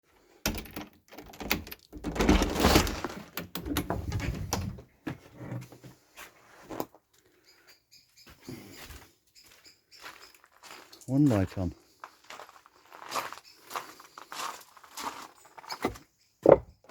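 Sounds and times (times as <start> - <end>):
knocks and clatter: 0.5 - 4.8, 15.8 - 16.8
faint high bird chirps: 7.3 - 11.0.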